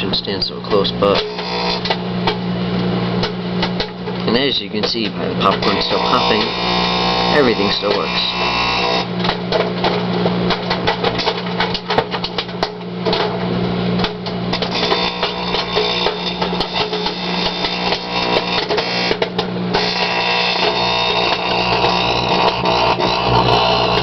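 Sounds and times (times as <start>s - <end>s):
microwave humming: 0.0s - 24.0s
popcorn popping: 9.0s - 24.0s
electrical arcing crackle: 14.5s - 24.0s.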